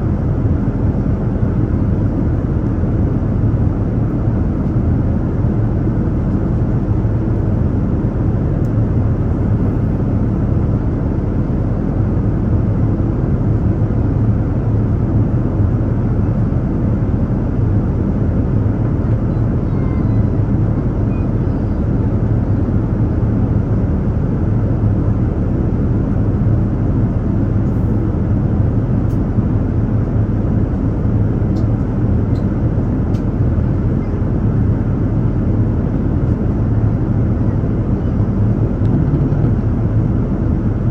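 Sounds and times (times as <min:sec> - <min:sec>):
airliner cabin rumble: 0:00.0 - 0:40.9
low hum: 0:36.0 - 0:40.9.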